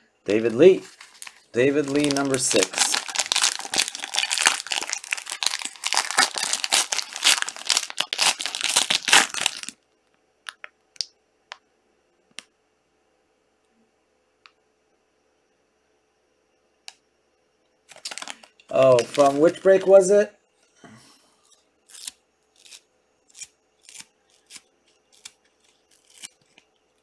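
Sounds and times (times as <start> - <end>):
plastic wrapper tearing and crinkling: 0.5 - 9.8, 17.9 - 19.8, 21.9 - 27.0.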